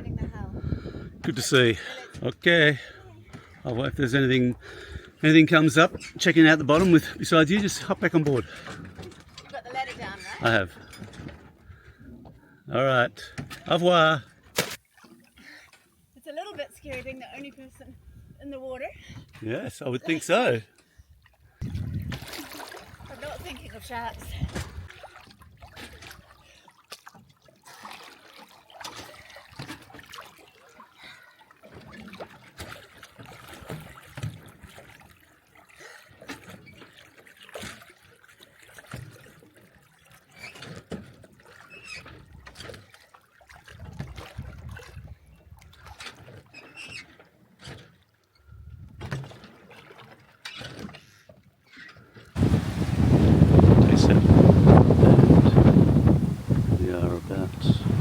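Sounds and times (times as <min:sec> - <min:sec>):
water lapping against hull: 0:00.0 - 0:58.0.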